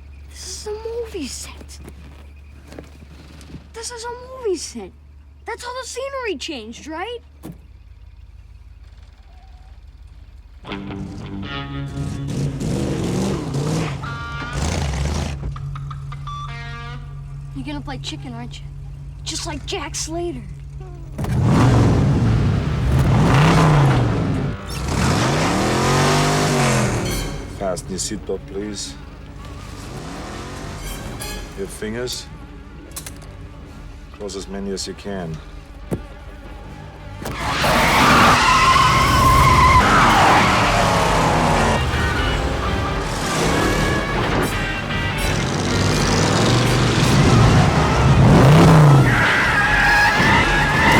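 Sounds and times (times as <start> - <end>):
tyres squealing: 0.0 - 50.9
car engine revving: 6.8 - 50.9
background music: 10.7 - 18.8, 24.0 - 50.9.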